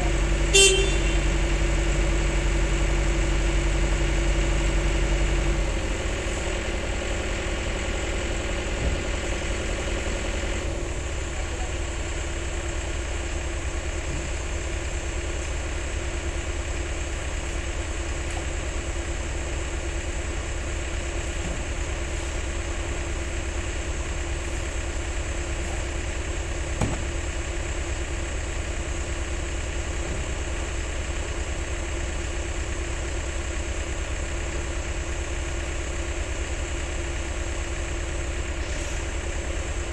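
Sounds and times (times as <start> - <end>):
heavy diesel engine running: 0.0 - 39.9
short metallic clunks: 26.6 - 27.4.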